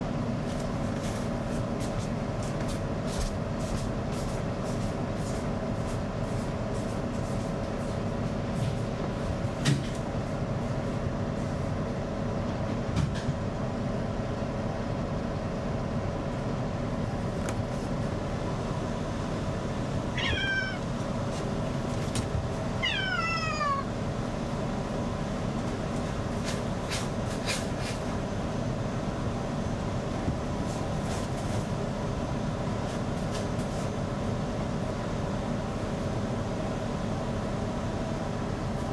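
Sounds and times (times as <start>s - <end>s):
cat meowing: 20.1s - 21.0s, 22.8s - 24.0s.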